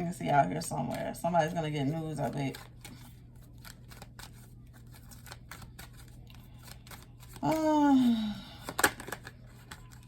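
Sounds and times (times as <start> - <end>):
cards clicking and rustling: 1.9 - 7.7, 8.6 - 10.0.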